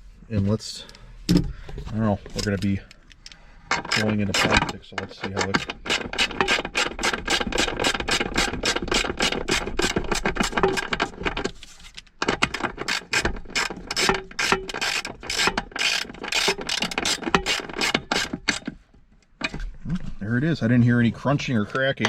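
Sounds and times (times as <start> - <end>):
ratchet clicking: 12.9 - 18.7.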